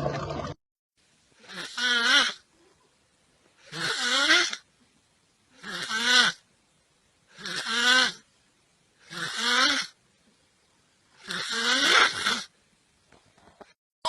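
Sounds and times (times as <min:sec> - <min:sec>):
person snoring: 0:07.3 - 0:08.2, 0:09.0 - 0:10.0, 0:11.2 - 0:12.5.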